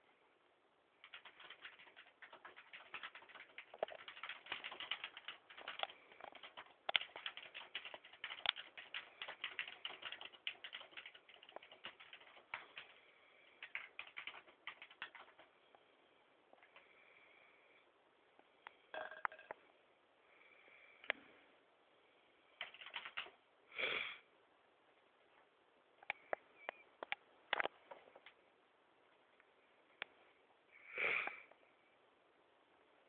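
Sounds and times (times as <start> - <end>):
rapid irregular clicking: 1.0 - 15.5, 22.6 - 23.4.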